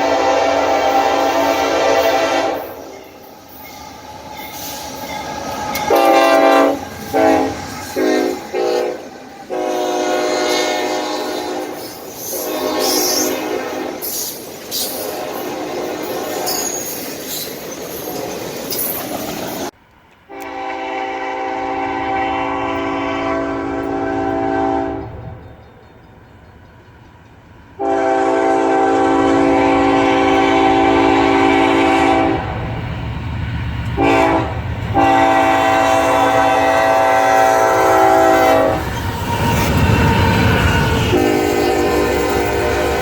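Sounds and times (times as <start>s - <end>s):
locomotive air horn: 0.0s - 2.9s, 5.7s - 16.8s, 20.3s - 25.3s, 27.8s - 32.6s, 34.0s - 43.0s
train rumble and wheel clatter: 0.0s - 43.0s.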